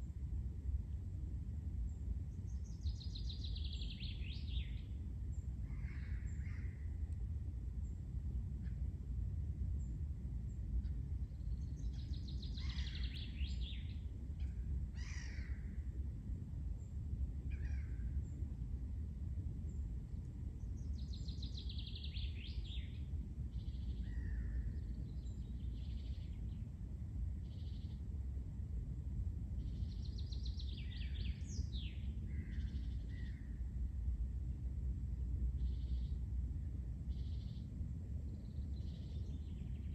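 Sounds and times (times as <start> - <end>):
steady low rumble: 0.0 - 39.9
songbird trilled song: 2.3 - 6.6, 11.2 - 14.1, 20.6 - 26.7, 27.4 - 28.0, 29.6 - 33.5, 35.6 - 36.2, 37.1 - 37.7, 38.3 - 39.9.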